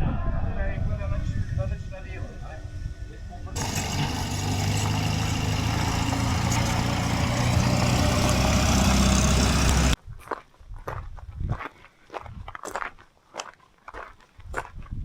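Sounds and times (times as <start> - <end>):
vehicle engine running: 3.4 - 10.0
footsteps on stony ground: 9.8 - 15.0.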